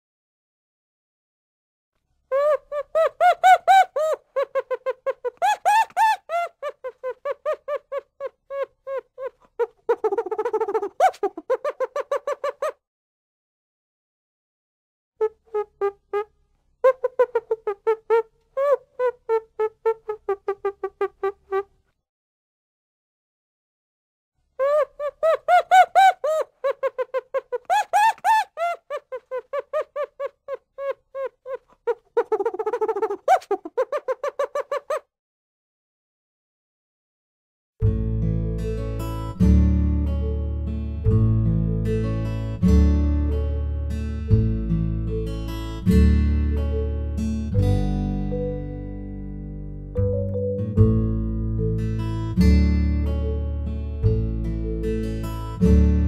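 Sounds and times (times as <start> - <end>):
chimpanzee hooting: 2.3 - 12.8, 24.6 - 35.0.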